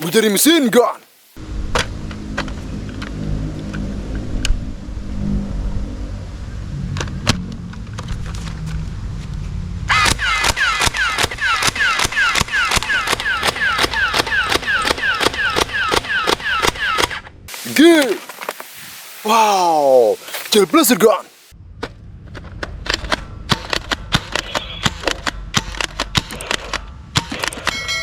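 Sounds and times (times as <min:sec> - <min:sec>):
low rumble: 0:01.4 - 0:09.9
scattered clicks: 0:09.9 - 0:17.3, 0:22.4 - 0:27.8
toy machine gun firing effect: 0:09.9 - 0:17.3.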